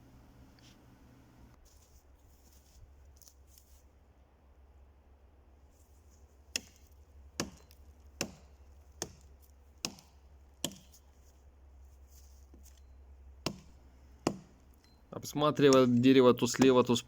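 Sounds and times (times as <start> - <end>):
axe chopping into tree trunk: 6.5 - 11.0, 13.4 - 14.6, 15.6 - 16.8.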